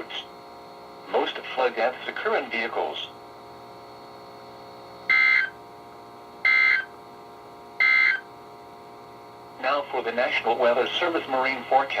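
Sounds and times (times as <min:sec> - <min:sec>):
radio hum: 0:00.0 - 0:00.4, 0:01.0 - 0:03.3, 0:04.8 - 0:05.6, 0:06.5 - 0:07.0, 0:07.8 - 0:08.3, 0:09.5 - 0:12.0
warbling two-tone data bursts: 0:05.1 - 0:05.5, 0:06.5 - 0:06.9, 0:07.8 - 0:08.2.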